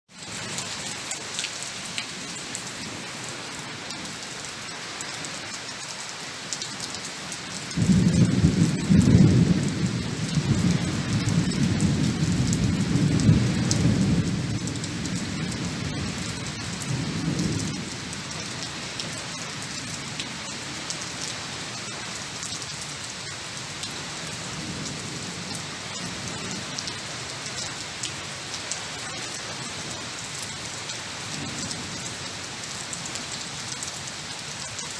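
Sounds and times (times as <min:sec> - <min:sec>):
steady rain falling: 0:00.1 - 0:34.9
low thunder rumble: 0:07.7 - 0:18.2.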